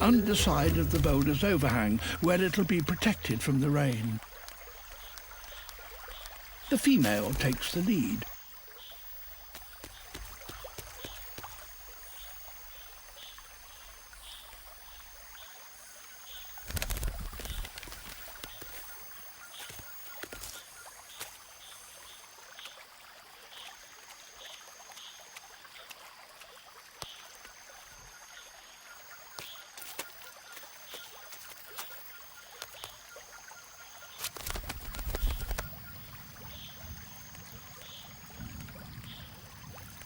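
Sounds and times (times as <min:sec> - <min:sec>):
high steady chirring: 0:00.0 - 0:04.2
low rumble: 0:00.0 - 0:04.4.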